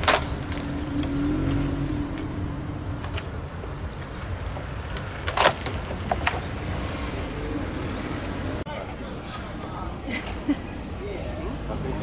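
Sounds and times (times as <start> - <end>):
car engine rumbling: 0.0 - 8.7.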